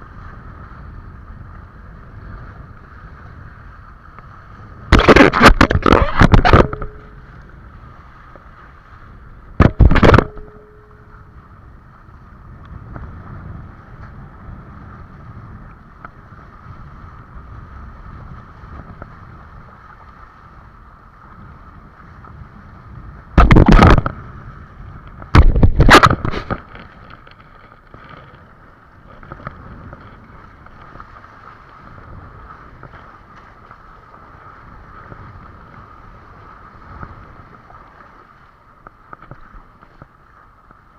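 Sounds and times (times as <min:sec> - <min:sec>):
wind noise on microphone: 0:00.0 - 0:40.9
water rushing: 0:04.9 - 0:07.3, 0:09.6 - 0:11.1, 0:23.4 - 0:24.2, 0:25.4 - 0:26.8.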